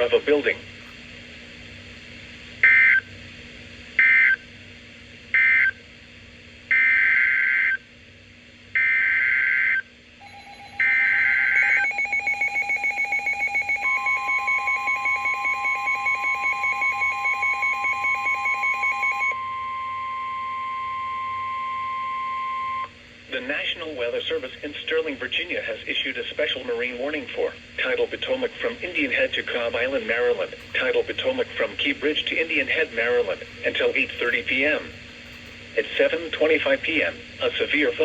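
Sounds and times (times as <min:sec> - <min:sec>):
steady alert tone: 0:10.2 - 0:19.3
warbling data bursts: 0:10.2 - 0:19.3
rapid beeping pulse: 0:10.2 - 0:22.8.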